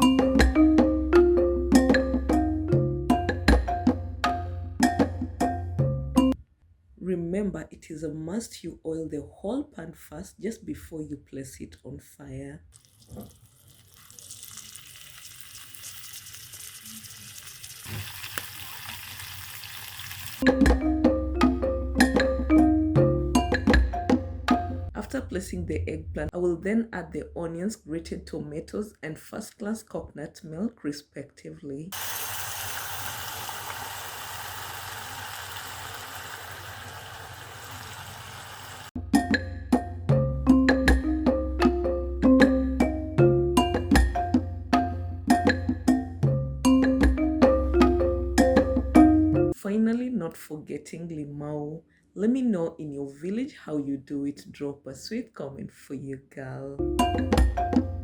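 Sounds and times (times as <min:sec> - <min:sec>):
marimba and percussion music: 0:00.0 - 0:06.4, 0:20.4 - 0:25.0, 0:39.0 - 0:49.6, 0:56.8 - 0:58.0
eggplant sizzling in hot oil: 0:12.8 - 0:20.4, 0:32.0 - 0:39.0.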